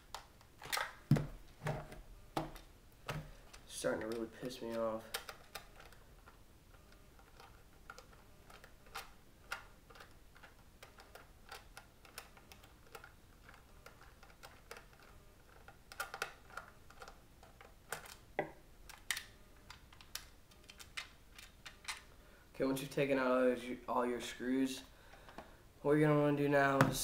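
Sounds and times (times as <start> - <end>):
clicks of small plastic parts: 7.2 - 18.2.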